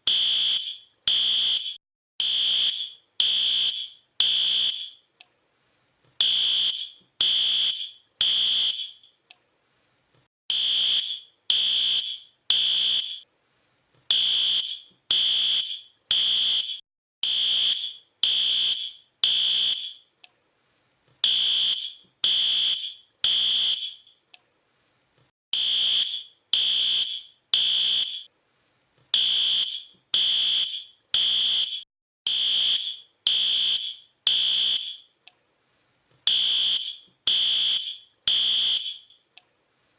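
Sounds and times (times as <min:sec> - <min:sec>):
fire alarm beeping: 0:00.0 - 0:05.0, 0:06.2 - 0:09.1, 0:10.5 - 0:13.2, 0:14.1 - 0:20.0, 0:21.2 - 0:24.1, 0:25.6 - 0:28.3, 0:29.2 - 0:35.1, 0:36.3 - 0:39.2.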